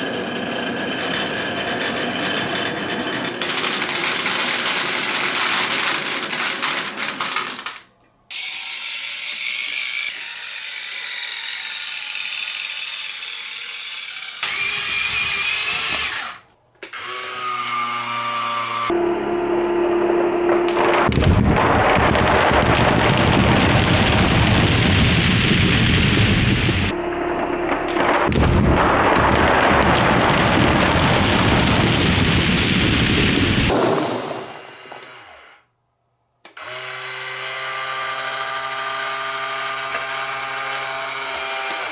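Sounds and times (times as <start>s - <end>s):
marbles rolling on wooden run: 0.0s - 7.9s
toy truck motor whirring: 0.0s - 18.9s.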